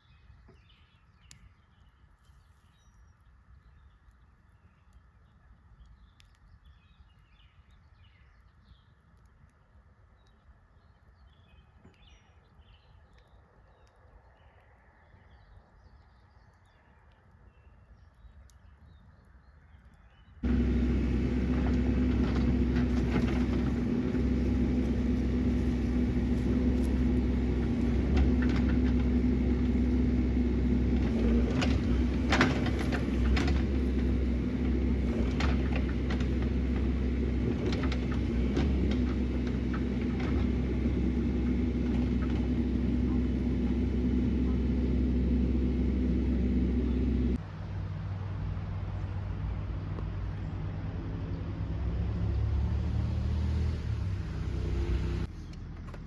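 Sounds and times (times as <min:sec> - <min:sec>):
excavator diesel engine running: 0:20.4 - 0:47.4.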